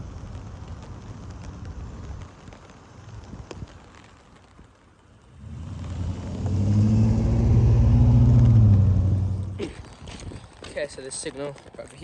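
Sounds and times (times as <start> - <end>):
vehicle driving past: 5.3 - 9.6.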